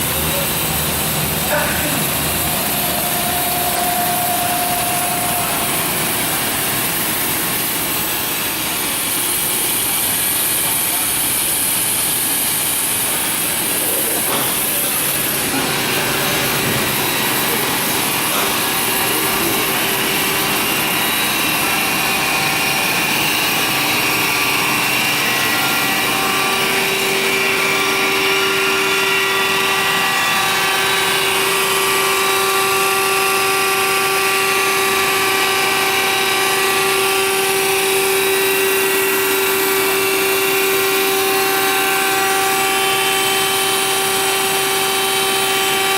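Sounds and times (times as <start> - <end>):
grinder hum: 0.0 - 45.9
grinding wheel hiss: 0.0 - 45.9.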